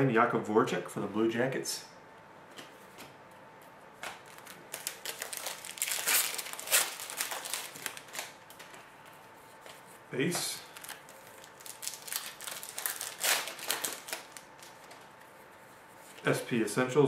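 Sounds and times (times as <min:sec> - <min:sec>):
card pack wrapper crinkling and tearing: 0:04.2 - 0:08.6, 0:10.6 - 0:15.1.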